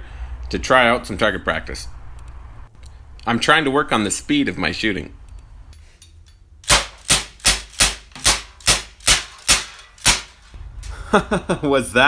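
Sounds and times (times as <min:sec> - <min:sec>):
airsoft pistol shots: 0:06.6 - 0:10.5.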